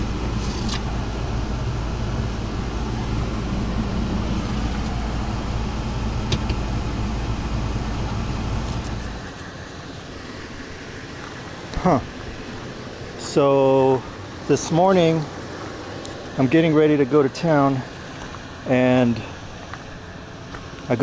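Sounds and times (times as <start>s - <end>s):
van engine humming: 0.0s - 21.0s.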